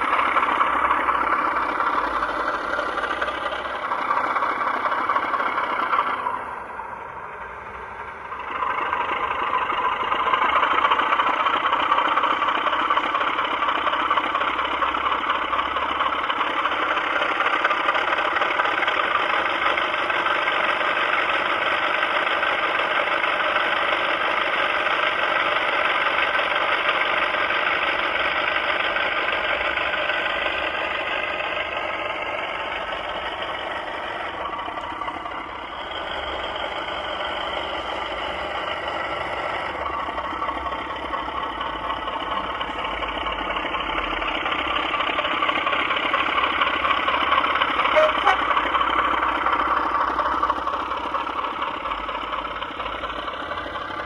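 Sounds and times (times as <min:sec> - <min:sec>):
diesel locomotive engine from small speaker: 0:00.0 - 0:54.0.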